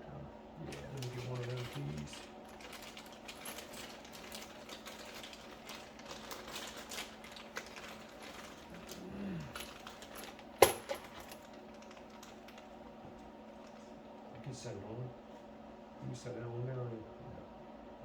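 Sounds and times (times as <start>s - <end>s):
small metal parts clinking: 0.7s - 12.8s.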